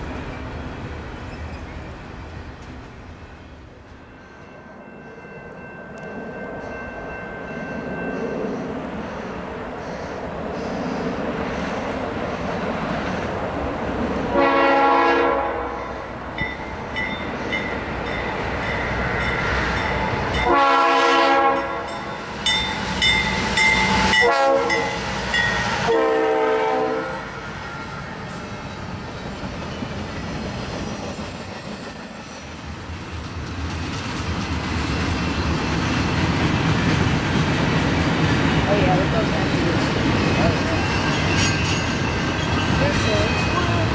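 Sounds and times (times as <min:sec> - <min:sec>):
passing train rumble: 0:00.0 - 0:43.9
locomotive air horn blasts: 0:14.3 - 0:16.0, 0:20.4 - 0:21.9, 0:24.1 - 0:25.0, 0:25.8 - 0:27.3.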